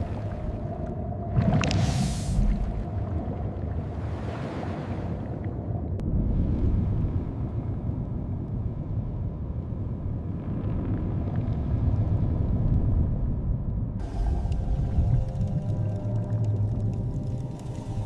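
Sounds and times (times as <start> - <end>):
low underwater rumble: 9.5 - 18.0.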